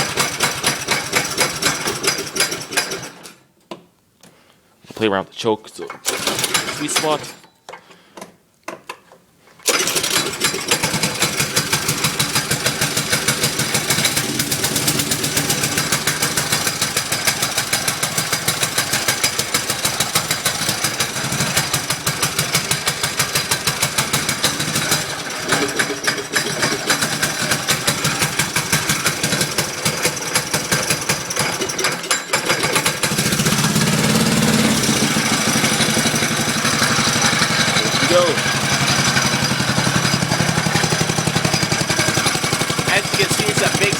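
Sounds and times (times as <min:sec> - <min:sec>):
small engine running: 0:09.7 - 0:43.9.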